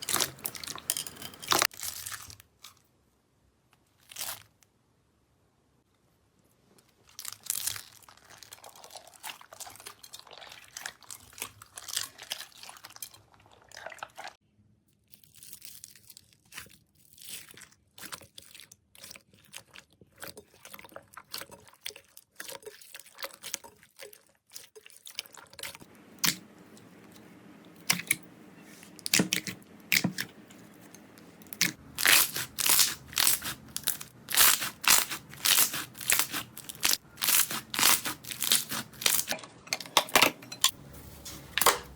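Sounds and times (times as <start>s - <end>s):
slime crackling and crunching: 7.0s - 13.2s, 15.2s - 26.4s, 29.1s - 39.4s.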